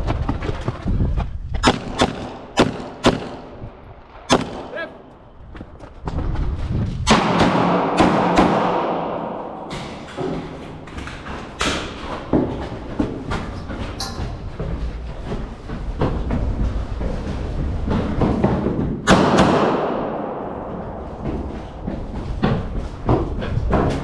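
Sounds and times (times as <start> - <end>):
pistol shots: 1.6 - 5.1, 7.1 - 9.8, 19.1 - 20.6.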